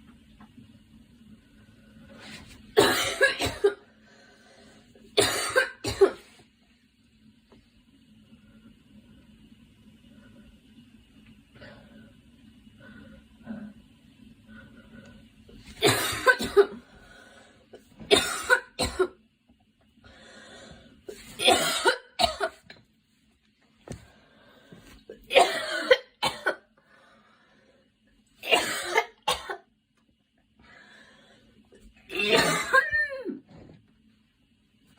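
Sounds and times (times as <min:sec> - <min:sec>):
girl coughing: 0:02.8 - 0:03.8, 0:05.2 - 0:06.2, 0:15.8 - 0:16.8, 0:18.1 - 0:19.2, 0:21.4 - 0:22.6, 0:25.3 - 0:26.6, 0:28.4 - 0:29.6, 0:32.1 - 0:33.4.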